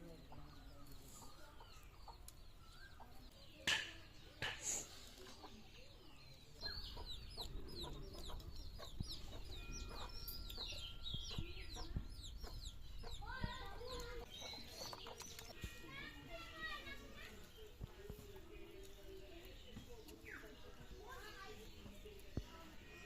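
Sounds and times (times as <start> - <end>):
chicks peeping: 0.0 - 3.5, 4.2 - 15.8
chickens clucking: 0.0 - 15.7.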